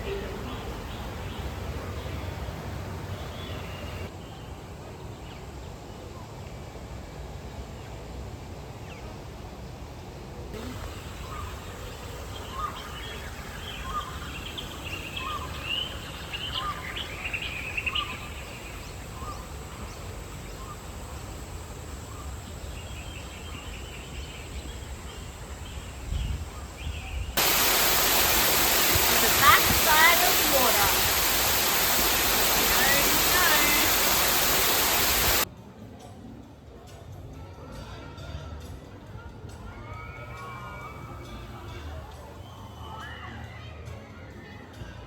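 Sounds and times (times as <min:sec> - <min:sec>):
birds chirping and calling: 0:22.0 - 0:35.4
fast-pulsing bird call: 0:27.4 - 0:35.4.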